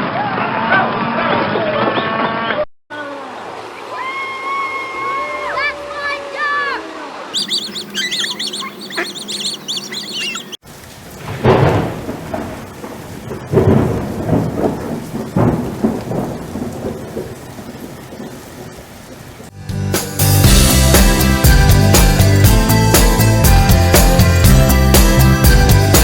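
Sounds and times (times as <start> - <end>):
rain: 2.9 - 19.6
birds chirping: 6.8 - 10.6
rolling thunder: 11.0 - 19.5.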